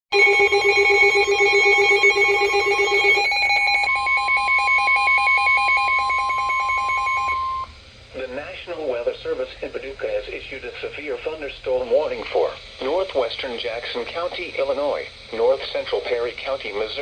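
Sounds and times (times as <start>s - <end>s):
rapid pulsing electronic beeps: 0.1s - 7.7s
steady warning alarm tone: 0.1s - 7.8s.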